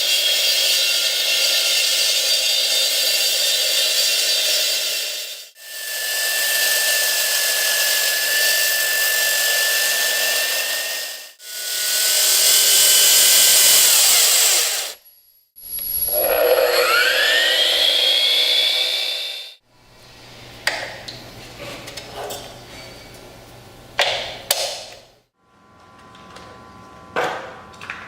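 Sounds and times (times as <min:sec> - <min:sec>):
concrete saw cutting with whine: 0:00.0 - 0:19.6.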